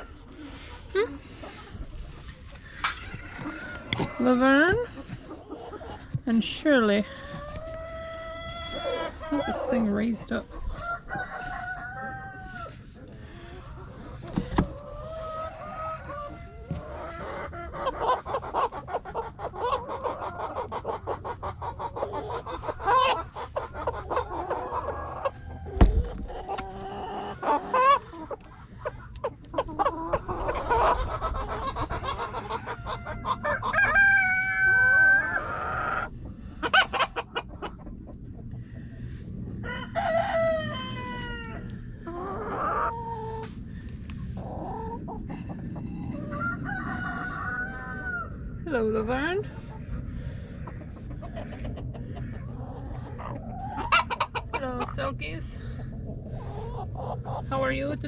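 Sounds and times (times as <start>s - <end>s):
hens clucking and cackling: 0.0s - 58.0s
thump: 25.8s - 26.2s.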